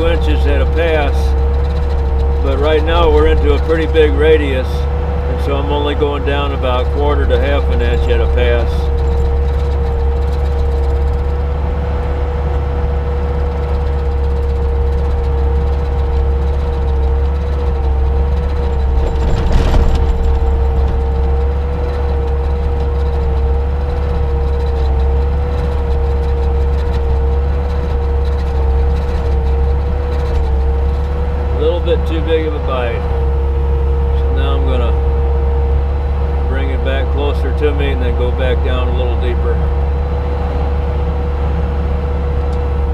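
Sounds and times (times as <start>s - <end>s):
diesel engine running hard: 0.0s - 42.9s
stump grinder whine: 0.0s - 42.9s.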